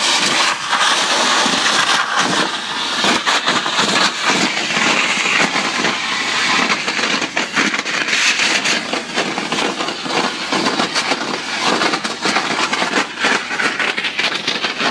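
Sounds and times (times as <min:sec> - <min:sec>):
water jet blasting concrete: 0:00.0 - 0:14.9.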